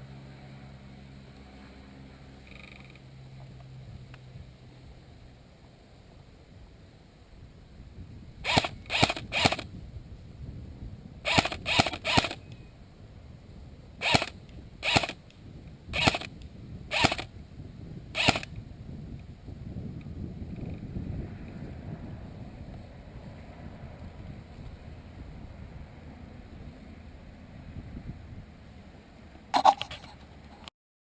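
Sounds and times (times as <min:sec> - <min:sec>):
airsoft gun shots: 0:08.5 - 0:09.6, 0:11.3 - 0:12.4, 0:14.0 - 0:15.2, 0:16.0 - 0:16.3, 0:16.9 - 0:17.3, 0:18.2 - 0:18.5.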